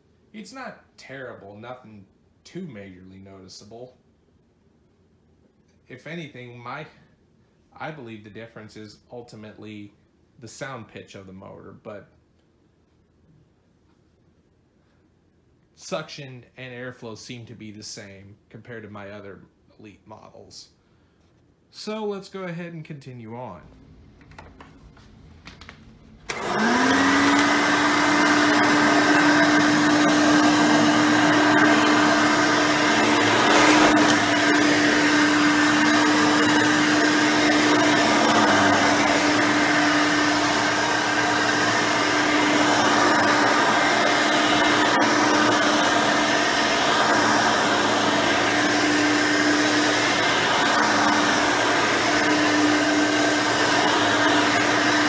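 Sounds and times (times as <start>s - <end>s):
upright vacuum cleaner running: 23.6s - 55.0s.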